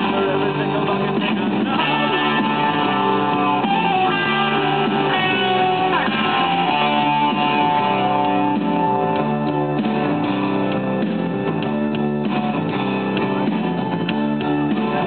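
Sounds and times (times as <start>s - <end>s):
guitar music with held notes: 0.0s - 15.0s
steady bass: 0.0s - 15.0s.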